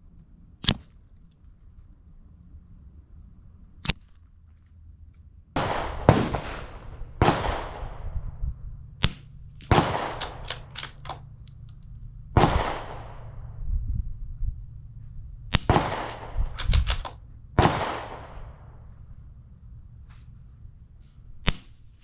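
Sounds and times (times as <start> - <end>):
suppressed rifle shots: 5.6 - 8.2, 9.0 - 13.6, 15.4 - 19.4, 21.1 - 22.0
rifle bolt clicks: 9.0 - 12.2, 15.5 - 17.2.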